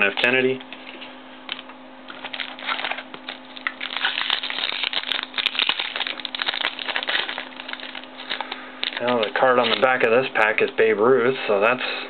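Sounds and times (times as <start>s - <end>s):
wrapper being torn and crinkled: 2.1s - 10.0s.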